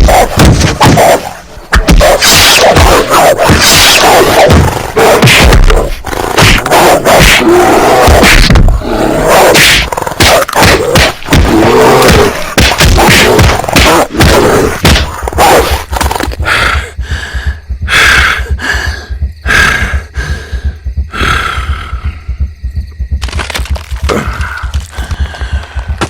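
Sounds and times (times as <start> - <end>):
animal growls and roars: 0.0 - 16.9
heavy thuds and blows: 0.0 - 18.6
low pulsing: 16.4 - 23.2.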